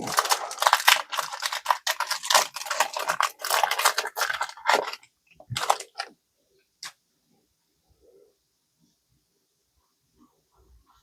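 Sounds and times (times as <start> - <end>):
card pack crinkling and rustling: 0.0 - 6.1.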